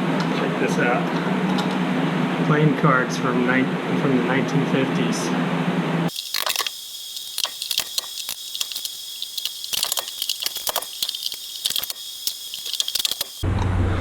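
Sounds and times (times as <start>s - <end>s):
high-pitched crackling and rustling: 6.1s - 13.4s
steady hiss: 6.1s - 13.4s.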